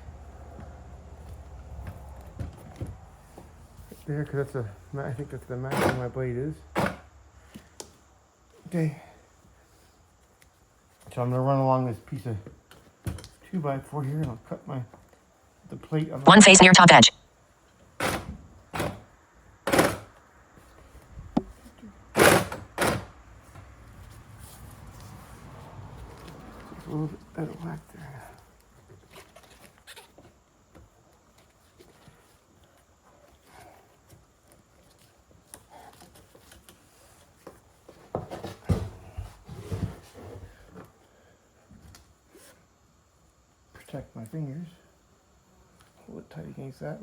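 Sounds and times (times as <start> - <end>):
short bursts of noise: 16.3 - 17.1.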